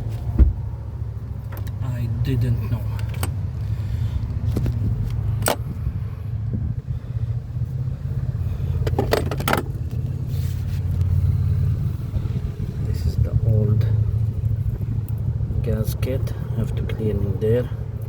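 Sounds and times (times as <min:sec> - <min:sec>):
steady low rumble: 0:00.0 - 0:18.0
metallic clicks of engine parts: 0:02.9 - 0:03.7, 0:08.8 - 0:10.1.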